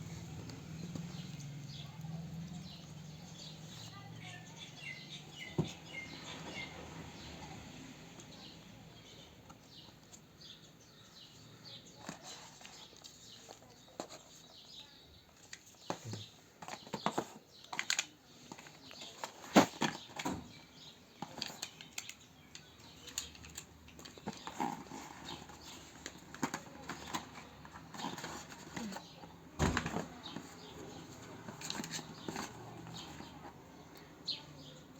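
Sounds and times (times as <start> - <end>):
clicks and taps handling a box: 15.3 - 34.1
packaging rustling: 21.1 - 33.6.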